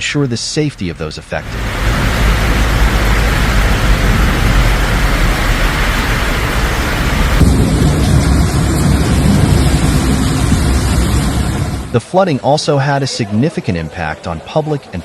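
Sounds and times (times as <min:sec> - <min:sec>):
pouring rain hiss: 0:00.3 - 0:12.0
deep rumble: 0:00.8 - 0:12.0.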